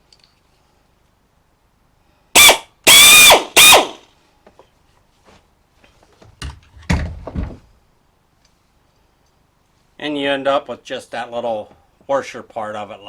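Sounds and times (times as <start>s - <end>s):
electric drill motor whine: 2.4s - 4.0s
light rattles and knocks: 5.3s - 7.8s.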